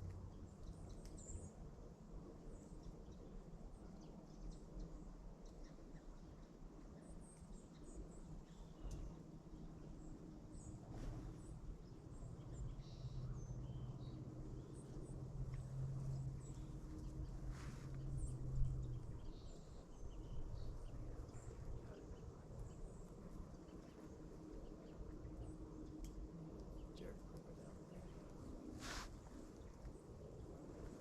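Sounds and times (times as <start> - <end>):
low outdoor rumble: 7.9 - 31.0.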